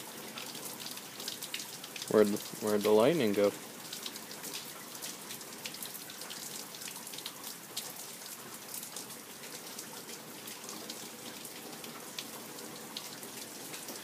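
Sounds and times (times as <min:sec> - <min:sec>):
rain falling: 0:00.0 - 0:14.0.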